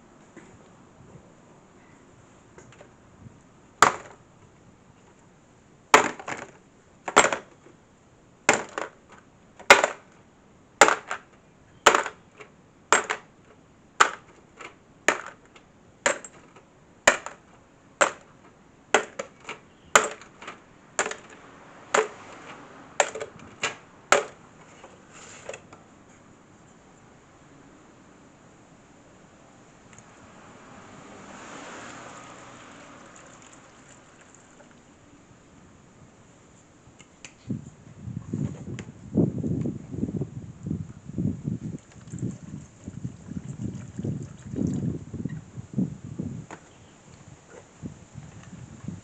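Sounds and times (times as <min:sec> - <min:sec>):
strikes on metal tool box: 0:19.0 - 0:20.4.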